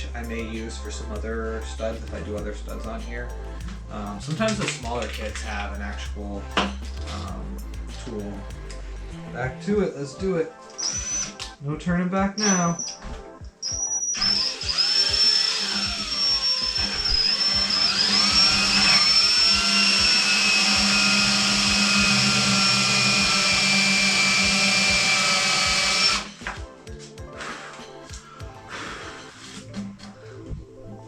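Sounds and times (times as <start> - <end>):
power drill boring: 0.0 - 8.8, 10.7 - 11.5, 13.8 - 26.6.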